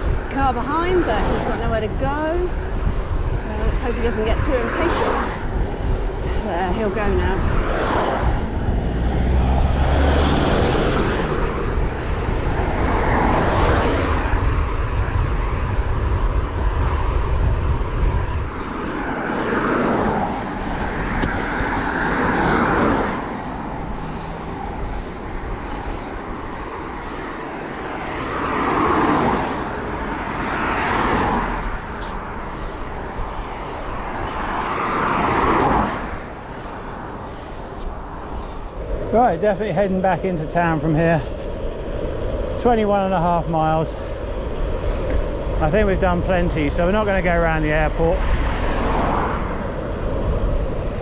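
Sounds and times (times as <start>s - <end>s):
vehicles passing: 0.0s - 51.0s
car engine rumble passing: 6.8s - 14.9s.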